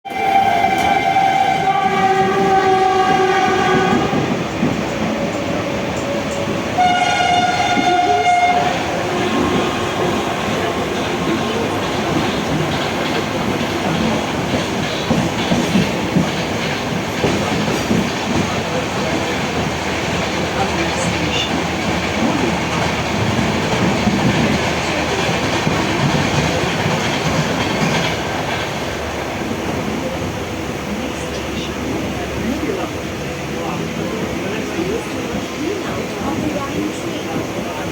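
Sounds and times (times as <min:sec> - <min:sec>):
train horn blasts: 0:00.1 - 0:04.4, 0:06.8 - 0:10.3
train wheels rumbling and clattering: 0:00.1 - 0:37.9.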